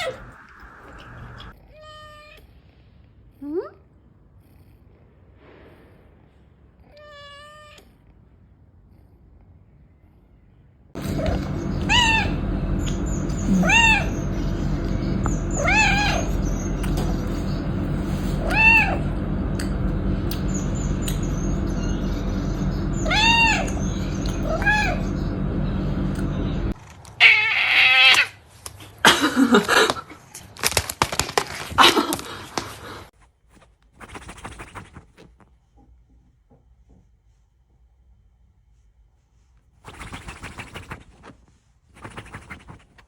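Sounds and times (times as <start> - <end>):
low hum: 0.0 - 1.5, 11.0 - 26.9
sliding cries: 0.0 - 2.3, 11.0 - 28.4
cat meowing: 0.0 - 2.5, 6.9 - 8.0, 11.0 - 26.4, 27.2 - 28.4
irregular noises: 11.0 - 27.2.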